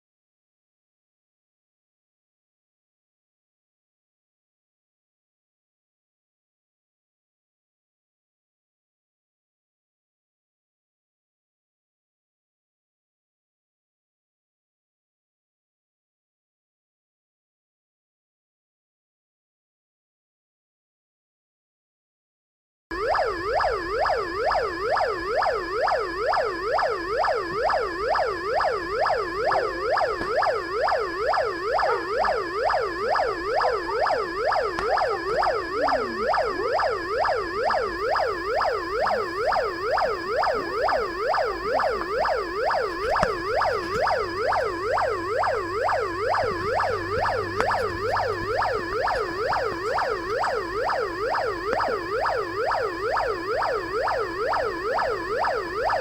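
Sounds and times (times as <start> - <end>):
electronic police siren yelp: 22.9 - 56.0
steady high whine: 26.4 - 55.1.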